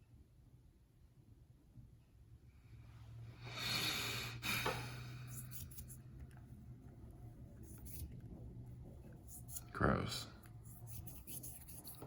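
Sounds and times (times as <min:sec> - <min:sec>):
noisy exhale of breath: 0:03.4 - 0:05.4.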